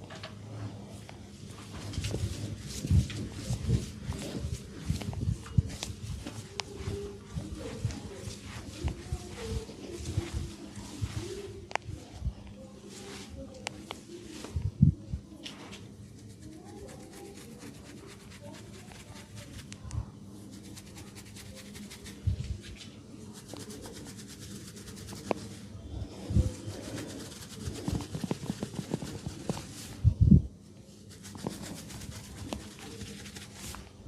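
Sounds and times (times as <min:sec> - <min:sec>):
hands rubbing an oiled head: 0:01.6 - 0:11.6, 0:15.7 - 0:30.0, 0:30.9 - 0:33.9.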